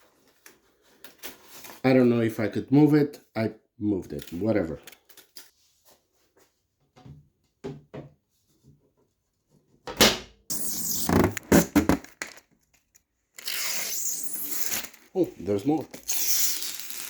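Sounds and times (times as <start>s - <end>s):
packaging scraping and rustling: 10.5s - 17.0s.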